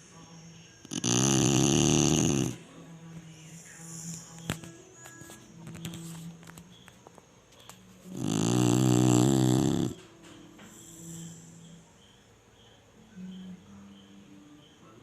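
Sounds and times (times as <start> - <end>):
dog snoring: 0.8 - 2.7, 8.0 - 10.0.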